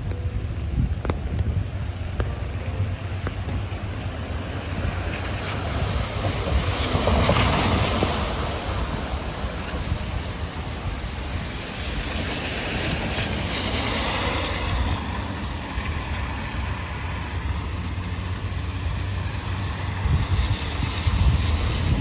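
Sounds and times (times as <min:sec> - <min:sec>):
vehicle passing on wet street: 0:00.0 - 0:22.0
wind rumble on microphone: 0:00.0 - 0:22.0.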